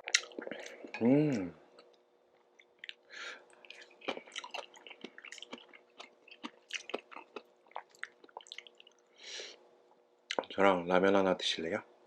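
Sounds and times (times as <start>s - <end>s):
person chewing noodles: 1.8s - 9.1s.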